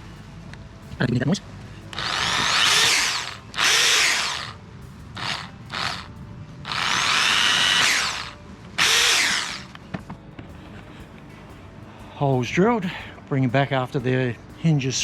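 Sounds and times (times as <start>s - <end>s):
power drill boring plastic: 2.0s - 4.6s, 5.2s - 6.1s, 6.7s - 9.7s.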